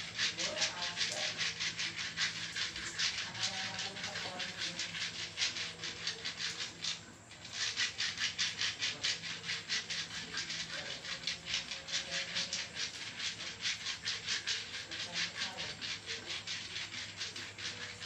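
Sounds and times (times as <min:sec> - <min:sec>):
massage rubbing strokes on skin: 0:00.0 - 0:18.0.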